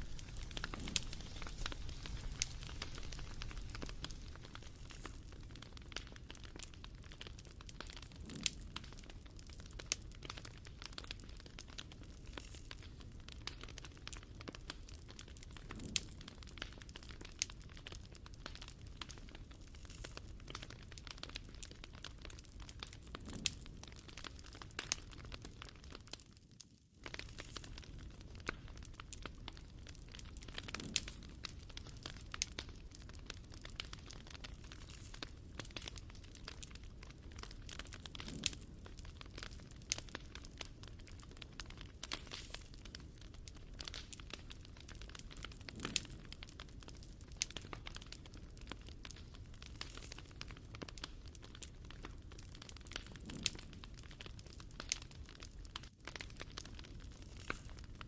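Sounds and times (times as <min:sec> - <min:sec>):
low steady rumble: 0:00.0 - 0:05.1
wood fire crackling: 0:00.0 - 0:58.0.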